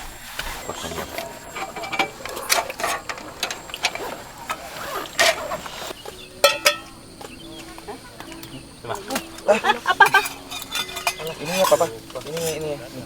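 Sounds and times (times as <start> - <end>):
small hard objects clattering: 8.3 - 13.0.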